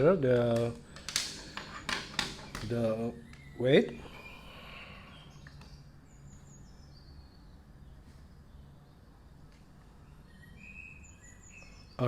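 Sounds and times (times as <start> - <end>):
steady low hum: 0.0 - 12.0
faint high bird chirps: 2.9 - 12.0.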